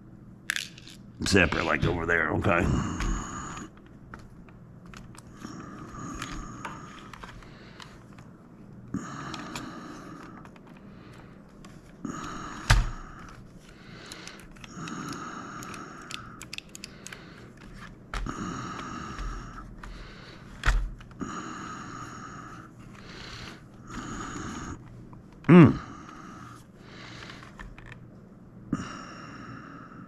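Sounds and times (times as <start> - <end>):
handling plastic parts: 12.6 - 18.3.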